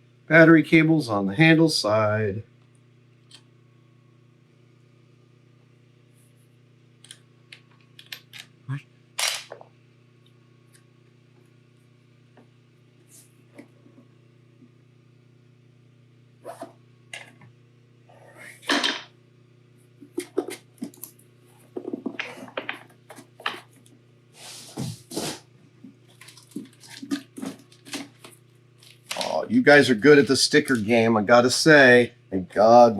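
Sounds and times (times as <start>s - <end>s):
steady low hum: 0.0s - 32.9s
small parts and tools clicking: 7.0s - 8.5s
packaging rustling: 26.1s - 29.4s.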